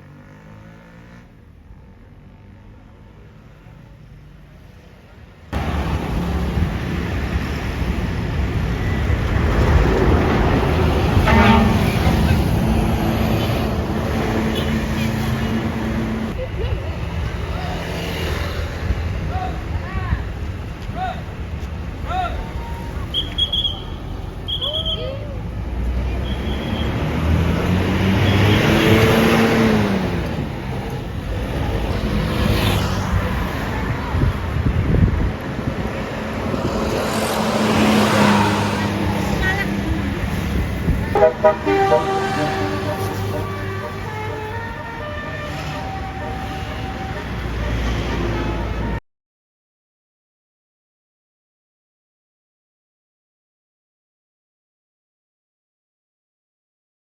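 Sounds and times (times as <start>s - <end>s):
bus passing: 0.0s - 49.0s
bus horn blast: 10.9s - 16.3s, 41.1s - 49.0s
tyres hissing on wet road: 35.6s - 43.6s.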